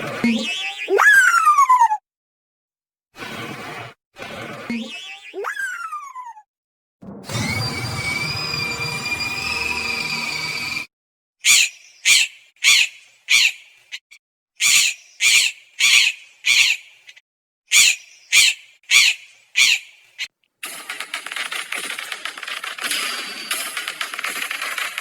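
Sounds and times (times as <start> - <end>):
dense rattling clatter: 20.6 - 25.0.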